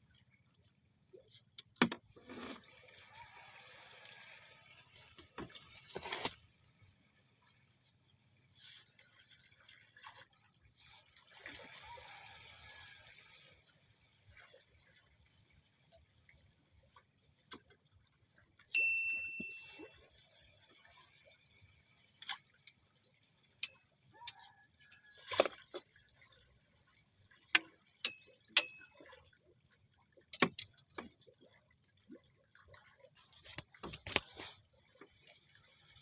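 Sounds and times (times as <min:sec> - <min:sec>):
metallic ping: 0:18.8 - 0:19.8.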